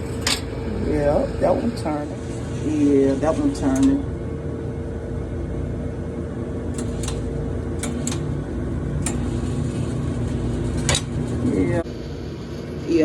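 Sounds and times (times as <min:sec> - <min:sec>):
machine hum and rumble: 0:00.0 - 0:13.0
sharp high clicks: 0:06.8 - 0:08.3.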